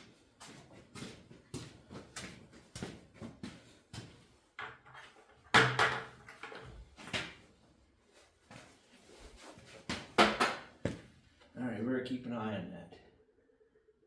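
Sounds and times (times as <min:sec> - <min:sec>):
objects knocking and clunking: 0:04.6 - 0:07.4, 0:09.9 - 0:11.1.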